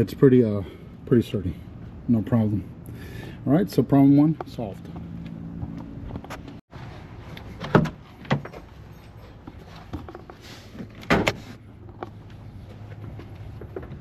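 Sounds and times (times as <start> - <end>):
sharp knocks and clunks: 7.6 - 8.7, 9.9 - 12.2.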